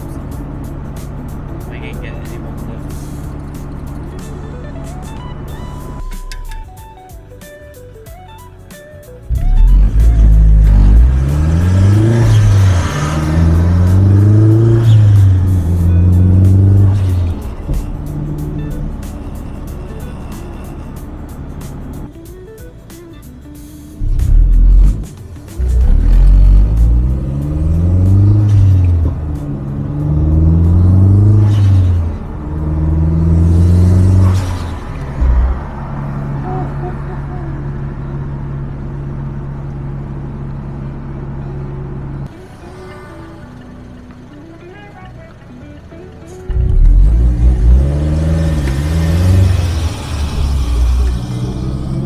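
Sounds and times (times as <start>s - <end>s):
car engine accelerating hard: 9.3s - 22.1s, 23.9s - 44.4s, 45.3s - 52.0s
turbo whoosh: 46.5s - 52.0s.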